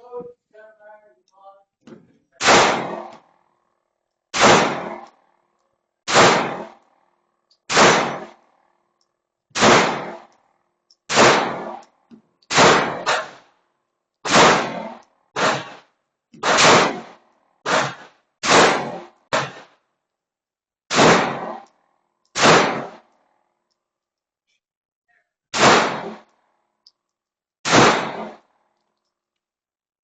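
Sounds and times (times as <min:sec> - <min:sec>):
airsoft pistol shots: 0:02.4 - 0:03.2, 0:04.3 - 0:05.1, 0:06.1 - 0:06.8, 0:07.7 - 0:08.4, 0:09.6 - 0:10.3, 0:11.1 - 0:11.8, 0:12.5 - 0:13.5, 0:14.2 - 0:19.8, 0:20.9 - 0:21.6, 0:22.4 - 0:23.1, 0:25.5 - 0:26.3, 0:27.6 - 0:28.4.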